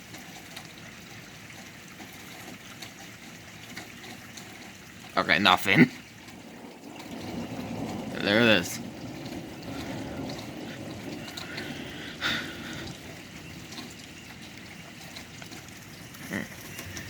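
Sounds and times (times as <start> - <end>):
rain falling and trickling: 0.0 - 17.0.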